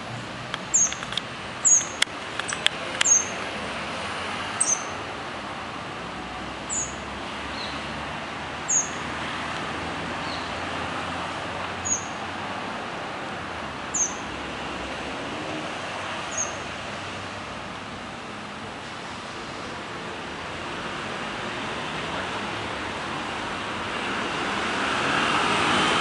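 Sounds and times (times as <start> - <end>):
sharp clicks: 0.5 - 3.5
small bird high chirps: 0.7 - 2.0, 3.0 - 3.4, 4.6 - 5.0, 6.7 - 7.8, 8.7 - 9.0, 11.8 - 12.2, 13.9 - 14.2, 16.3 - 16.6.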